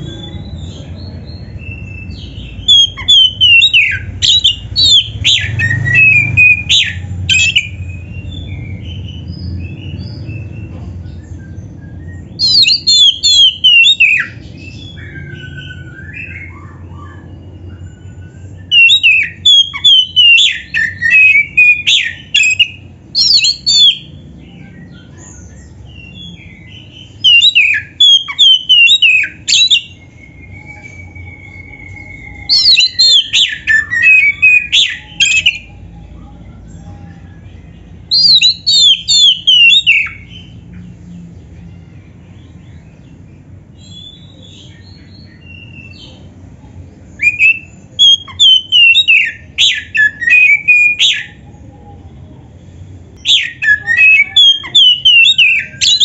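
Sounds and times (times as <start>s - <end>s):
steady low hum: 0.0s - 13.6s
bird singing whistled phrases: 0.0s - 35.9s, 38.1s - 40.6s, 47.1s - 51.4s, 53.2s - 56.0s.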